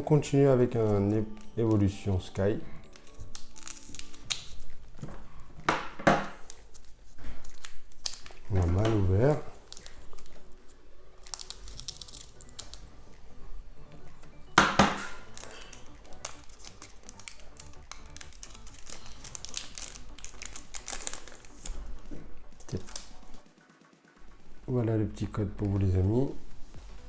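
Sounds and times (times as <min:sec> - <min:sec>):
foil wrapper crinkling and tearing: 0:00.1 - 0:05.6, 0:06.2 - 0:13.3, 0:15.0 - 0:23.4.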